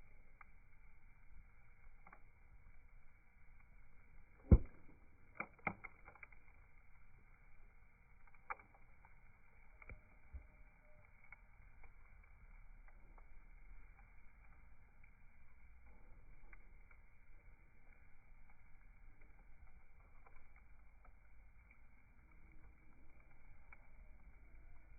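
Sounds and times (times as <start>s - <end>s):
bonfire crackling pops: 0.0s - 24.9s.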